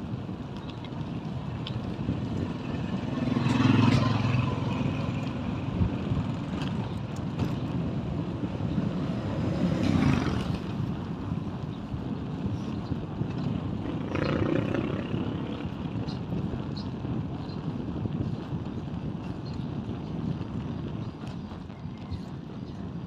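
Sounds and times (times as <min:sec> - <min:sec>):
vehicles passing close: 0:00.0 - 0:17.3
low traffic rumble: 0:00.0 - 0:23.0.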